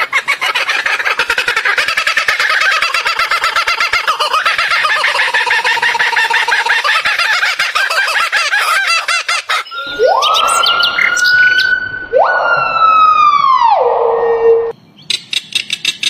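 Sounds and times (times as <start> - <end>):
long rising bird calls: 0.0 - 13.9.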